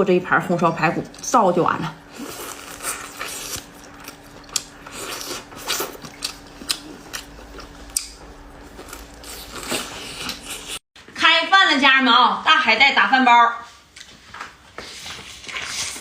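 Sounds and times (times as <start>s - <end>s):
chewing and lip smacking: 2.3s - 10.8s.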